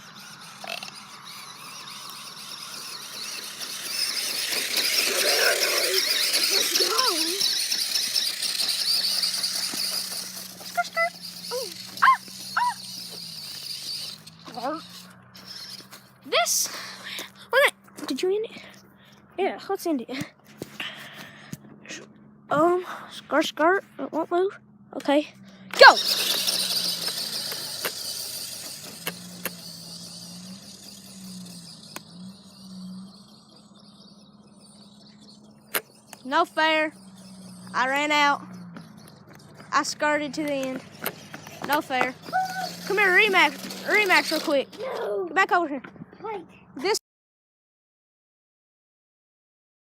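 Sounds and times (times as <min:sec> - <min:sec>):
toy car electric motor whine: 0:00.0 - 0:17.6, 0:25.3 - 0:45.2
high yelps falling in pitch: 0:03.6 - 0:14.3.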